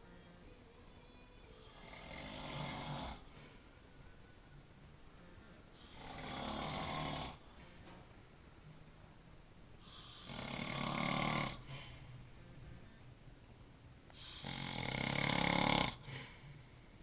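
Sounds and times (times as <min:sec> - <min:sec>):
person snoring: 0:01.5 - 0:03.4, 0:05.8 - 0:07.6, 0:09.8 - 0:12.0, 0:14.2 - 0:16.4.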